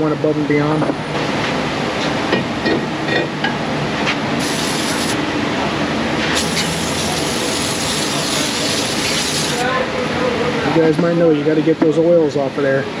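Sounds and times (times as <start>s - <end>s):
aerosol spray bursts: 4.4s - 5.2s, 6.4s - 9.6s.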